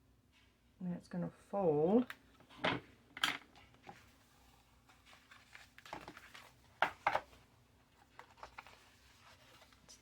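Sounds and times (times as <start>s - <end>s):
paper rustling and folding: 3.5s - 10.0s.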